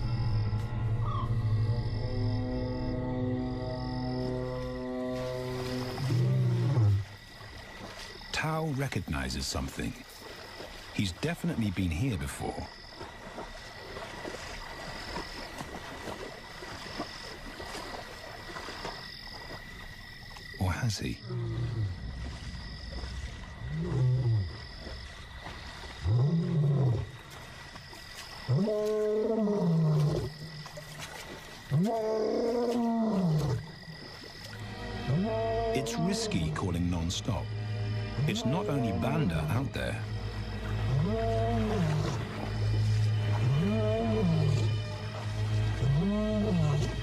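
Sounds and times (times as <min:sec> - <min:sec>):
lion roaring: 0:04.3 - 0:07.1, 0:23.6 - 0:24.6, 0:26.0 - 0:27.1, 0:28.5 - 0:30.4, 0:31.7 - 0:33.8, 0:40.9 - 0:42.2, 0:43.4 - 0:44.7, 0:45.8 - 0:47.0
frogs clicking calls: 0:07.0 - 0:47.0.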